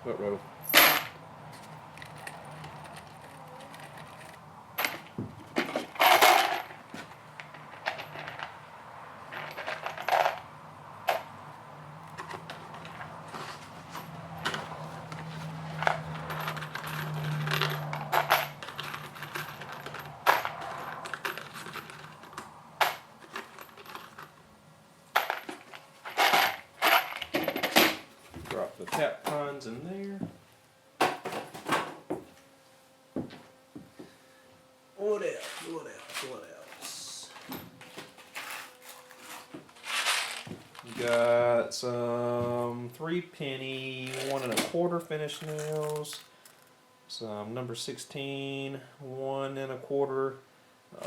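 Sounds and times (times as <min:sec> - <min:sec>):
screws clattering into plastic bin: 0:15.8 - 0:24.3, 0:38.2 - 0:41.3, 0:45.4 - 0:46.7.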